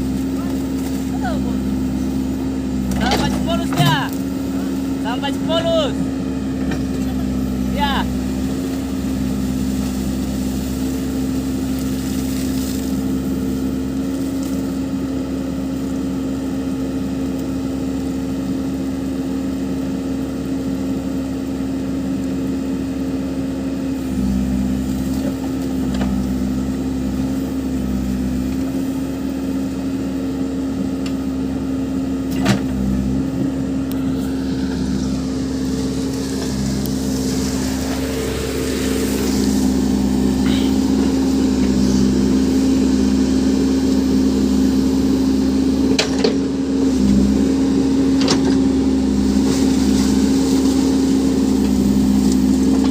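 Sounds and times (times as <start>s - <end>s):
backhoe diesel engine running: 0.0s - 52.9s.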